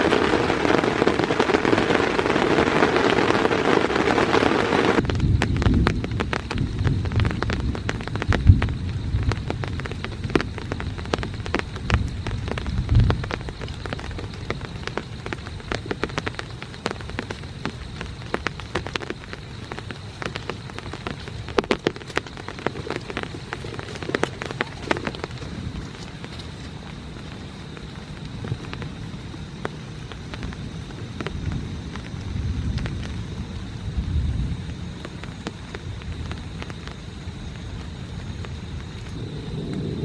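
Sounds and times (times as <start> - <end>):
rain tapping on a tent: 0.0 - 40.0
low rumble: 39.0 - 40.0.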